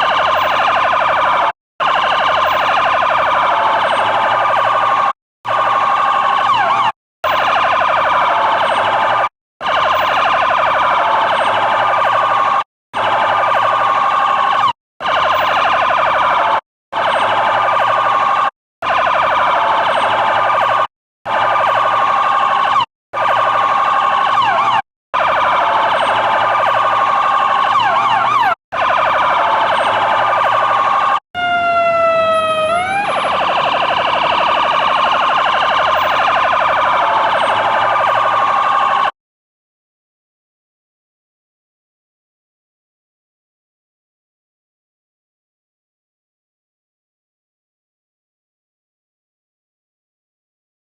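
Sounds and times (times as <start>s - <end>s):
electronic siren pulsing tone: 0.0s - 39.2s
rising siren sweep: 0.0s - 39.2s.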